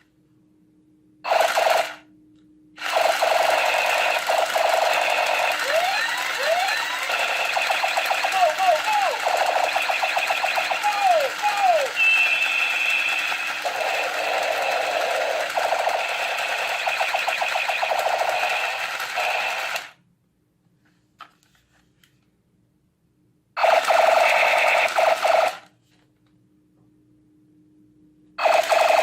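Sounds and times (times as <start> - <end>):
toy gun electronic firing effect: 1.3 - 2.0, 2.8 - 20.0, 23.6 - 25.7, 28.4 - 29.0.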